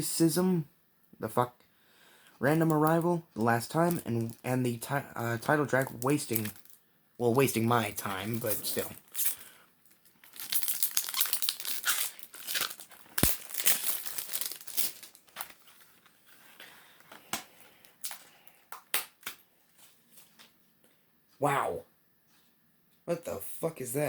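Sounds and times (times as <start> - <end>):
plastic wrapping crinkling: 2.4 - 19.4.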